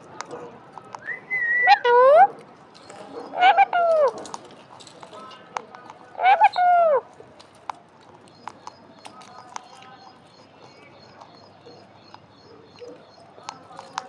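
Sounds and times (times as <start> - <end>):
parakeet loud calls: 6.2 - 7.0.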